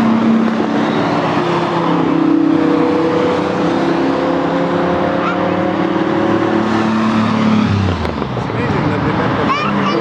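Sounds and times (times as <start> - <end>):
racing car engines droning: 0.0 - 10.0.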